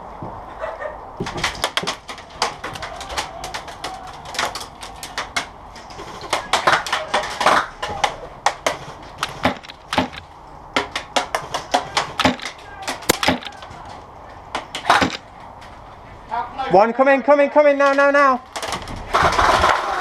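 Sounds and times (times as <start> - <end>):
airsoft guns firing: 9.2 - 10.2, 10.8 - 13.8, 14.8 - 15.3.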